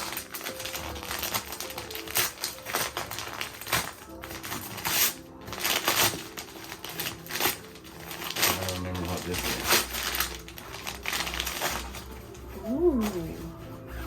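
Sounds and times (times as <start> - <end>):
faint background music: 0.0 - 14.0
wrapping paper tearing and crinkling: 0.0 - 14.0.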